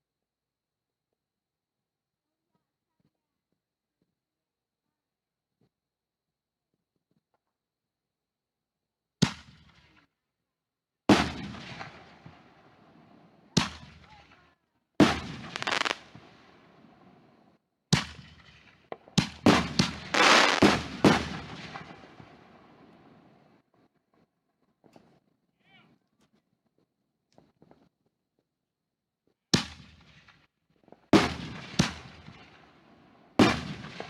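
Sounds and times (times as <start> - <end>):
fireworks bangs echoing: 11.1 - 14.2, 15.0 - 23.5, 31.1 - 34.0.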